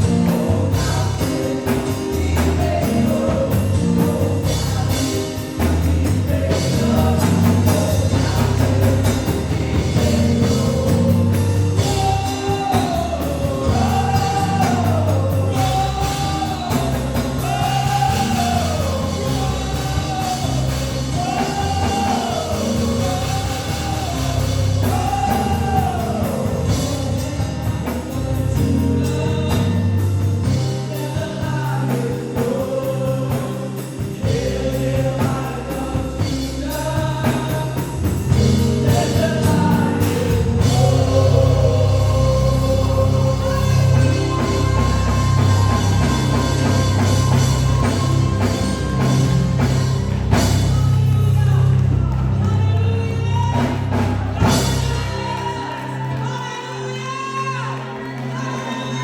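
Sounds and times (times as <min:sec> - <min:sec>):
band with bass and drums: 0:00.0 - 0:59.0
singers singing phrases: 0:38.8 - 0:50.1.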